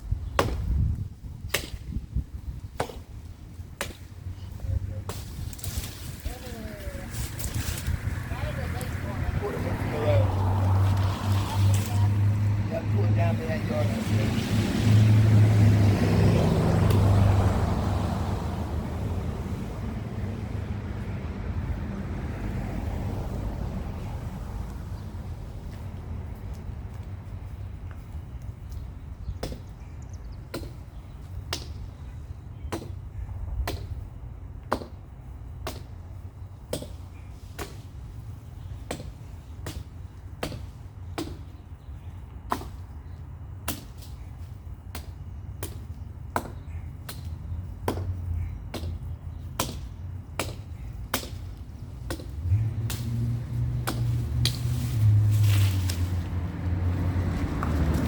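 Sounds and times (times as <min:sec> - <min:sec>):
axe chopping tree limb: 0:00.3 - 0:02.0, 0:02.6 - 0:04.1, 0:16.6 - 0:17.2, 0:29.4 - 0:29.8, 0:30.5 - 0:31.8, 0:32.6 - 0:34.0, 0:34.6 - 0:35.0, 0:35.6 - 0:36.0, 0:36.6 - 0:38.0, 0:38.7 - 0:41.6, 0:42.4 - 0:43.0, 0:43.6 - 0:44.2, 0:44.9 - 0:54.8
vehicle engine humming: 0:02.0 - 0:58.0.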